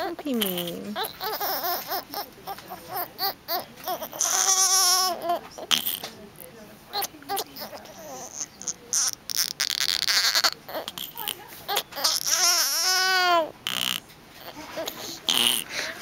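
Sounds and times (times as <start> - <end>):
baby crying with blocked nose: 0.0 - 6.1, 7.0 - 15.8.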